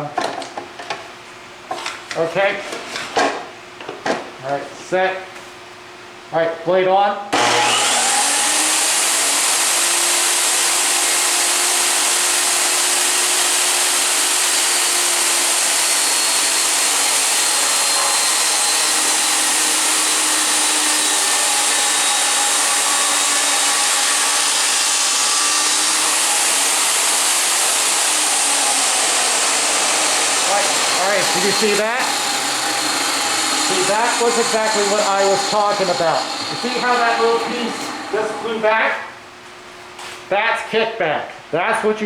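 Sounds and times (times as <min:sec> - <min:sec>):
table saw running: 0:07.3 - 0:39.0.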